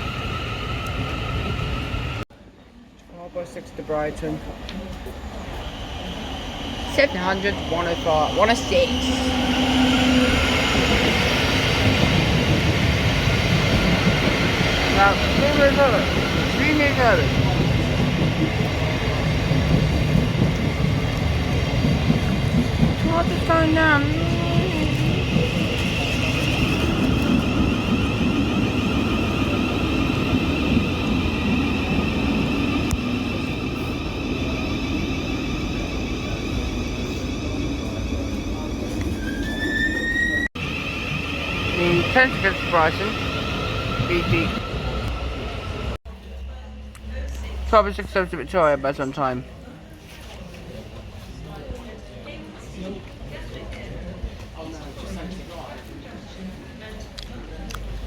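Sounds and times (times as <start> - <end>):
train wheels rumbling on rails: 4.4 - 46.0.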